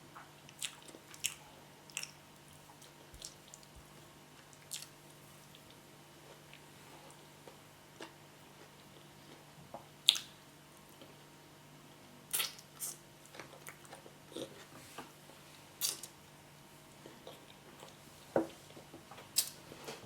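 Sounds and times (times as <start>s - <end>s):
faint steady hum: 0.0s - 20.0s
person chewing food: 0.3s - 11.2s, 12.3s - 14.7s, 16.9s - 18.0s.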